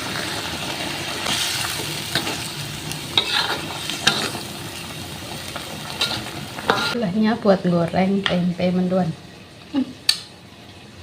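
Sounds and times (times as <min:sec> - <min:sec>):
frying hiss: 0:00.0 - 0:11.0
spatula scraping a pan: 0:03.1 - 0:04.5, 0:05.9 - 0:07.0.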